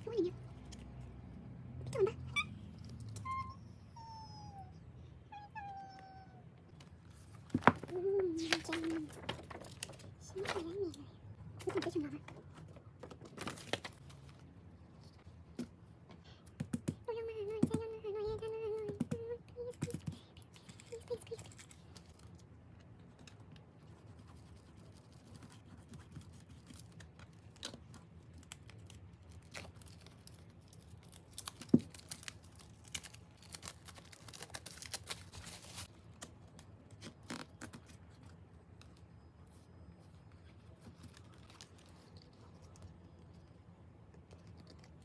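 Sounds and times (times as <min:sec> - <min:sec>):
rustling and tearing of plastic: 0:07.1 - 0:11.0, 0:13.0 - 0:15.1, 0:25.4 - 0:38.3, 0:40.7 - 0:43.0.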